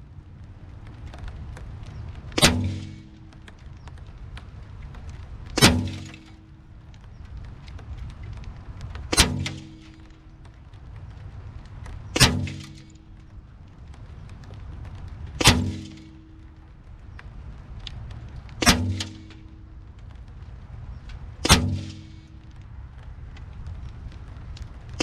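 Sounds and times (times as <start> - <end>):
air rifle shots: 2.4 - 3.6, 5.6 - 6.6, 9.1 - 10.3, 12.2 - 13.3, 15.4 - 16.5, 18.6 - 19.7, 21.4 - 22.4.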